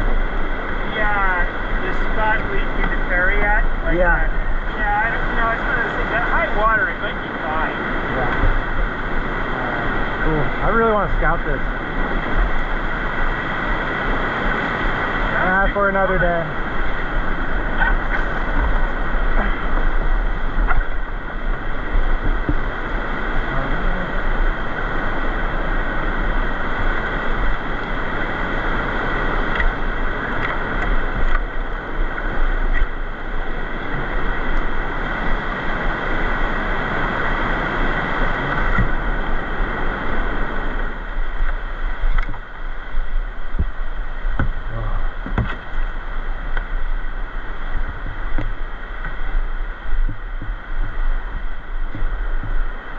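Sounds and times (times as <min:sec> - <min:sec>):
rushing river whitewater: 0:00.0 - 0:52.9
wind buffeting microphone: 0:00.0 - 0:52.9.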